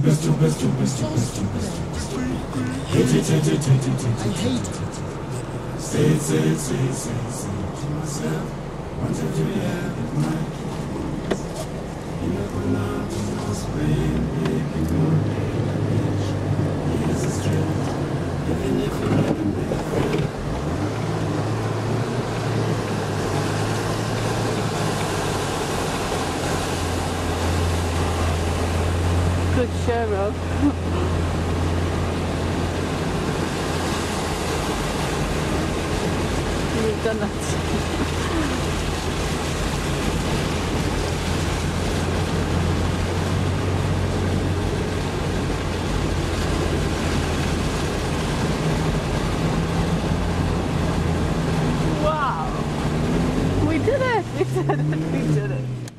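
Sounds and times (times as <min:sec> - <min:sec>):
car engine humming: 0:00.0 - 0:55.9
floodwater rushing: 0:00.0 - 0:55.9.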